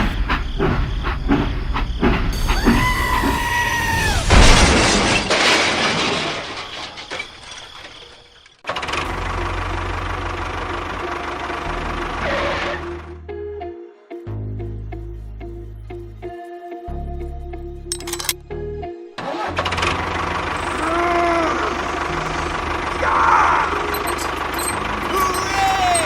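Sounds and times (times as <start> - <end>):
loud crash: 2.4 - 8.2
engine-like rumble with hiss: 8.9 - 13.2, 19.7 - 26.0.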